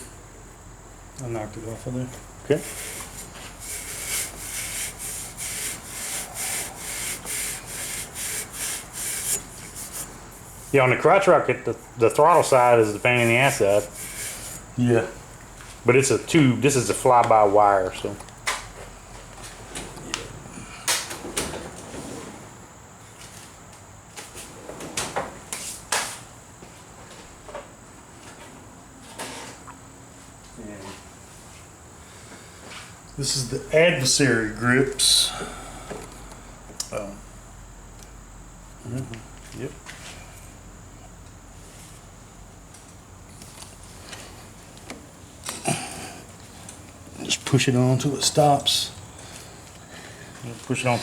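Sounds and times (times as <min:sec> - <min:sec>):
sandpaper rasping on metal bar: 0:02.6 - 0:10.8, 0:12.3 - 0:14.7.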